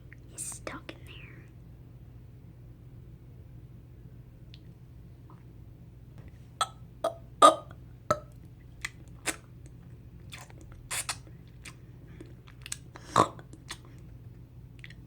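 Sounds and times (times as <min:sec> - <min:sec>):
wet mouth clicks: 0:10.3 - 0:13.9.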